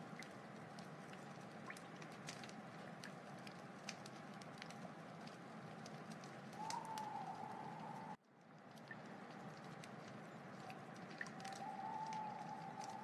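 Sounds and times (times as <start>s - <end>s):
wood fire crackling and popping: 0.0s - 13.0s
faint whistling tone: 6.6s - 8.2s, 11.3s - 13.0s.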